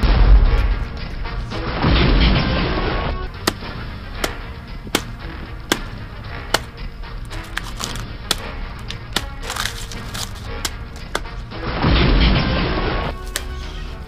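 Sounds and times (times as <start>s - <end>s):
heavy low boom: 0.0s - 3.2s.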